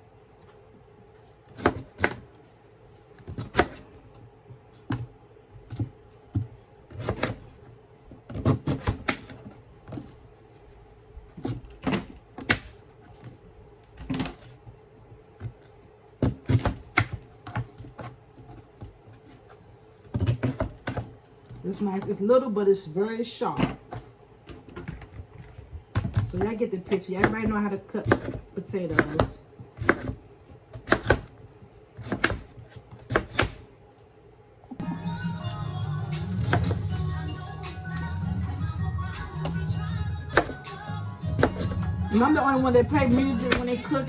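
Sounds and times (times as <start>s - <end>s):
knife chopping on cutting board: 1.5s - 2.2s, 3.2s - 3.8s, 5.7s - 7.5s, 8.3s - 9.4s, 16.2s - 18.1s, 27.2s - 31.3s, 32.0s - 33.6s, 36.4s - 36.8s, 40.3s - 40.6s, 41.3s - 41.8s, 43.0s - 43.7s.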